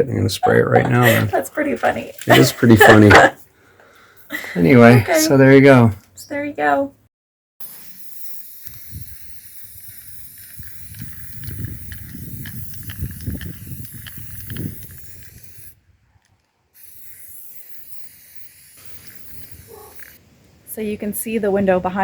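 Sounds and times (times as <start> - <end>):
spray paint can hissing: 7.6 - 15.8, 16.8 - 20.2.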